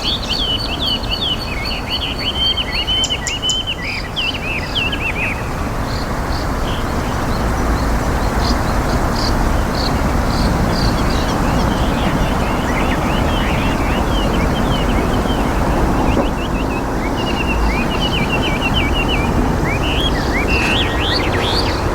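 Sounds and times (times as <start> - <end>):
small twittering chirps: 0.0 - 21.9
steady outdoor rumble: 4.5 - 21.9
bird calling sharp high notes: 16.1 - 21.9.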